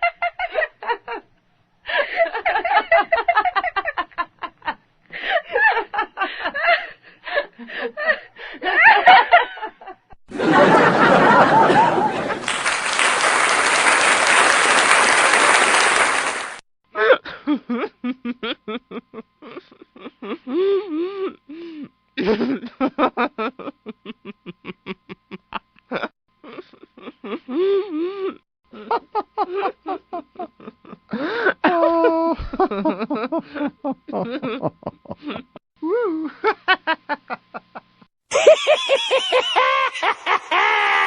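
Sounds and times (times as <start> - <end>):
audience laughter and applause: 10.3 - 16.6
person laughing in high bursts: 17.0 - 37.6, 38.3 - 41.0.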